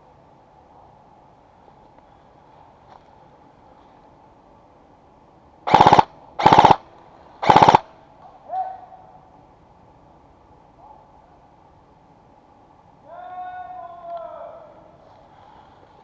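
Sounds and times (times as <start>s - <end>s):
airsoft gun full-auto bursts: 5.7s - 7.9s.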